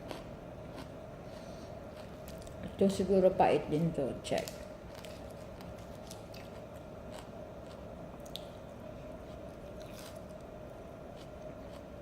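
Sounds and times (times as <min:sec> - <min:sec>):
steady background hum: 0:00.0 - 0:12.0
chewing salad leaves: 0:01.9 - 0:02.8, 0:04.4 - 0:10.5, 0:11.1 - 0:12.0.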